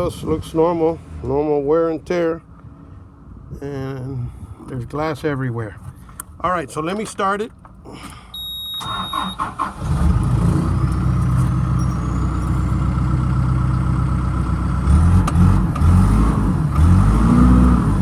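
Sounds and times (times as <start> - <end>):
diesel engine cranking: 8.0 - 18.0
high electronic beep: 8.4 - 9.4, 11.8 - 13.2
diesel engine idling: 8.8 - 15.6
engine revving: 8.8 - 18.0.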